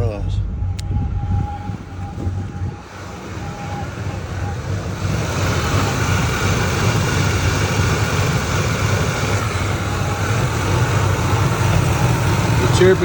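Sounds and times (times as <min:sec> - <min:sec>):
engine chirp: 0:00.0 - 0:13.0
engine idling: 0:00.0 - 0:13.0.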